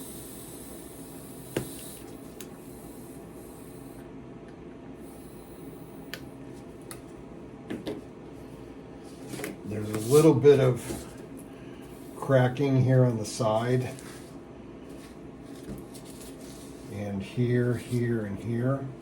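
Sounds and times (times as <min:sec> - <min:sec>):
air hissing from tyre valve: 0:00.0 - 0:04.0, 0:05.0 - 0:06.1.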